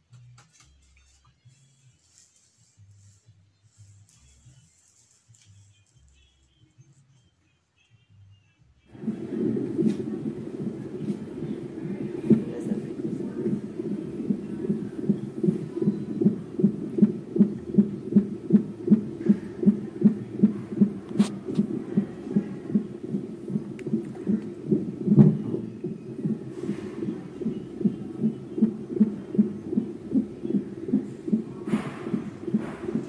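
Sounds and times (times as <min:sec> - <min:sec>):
fetal heartbeat whooshing pulse: 0:09.0 - 0:33.0.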